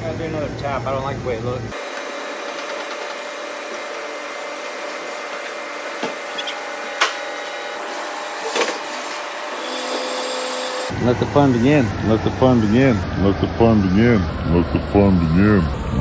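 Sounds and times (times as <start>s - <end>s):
machine shop hum and hiss: 0.0s - 15.9s.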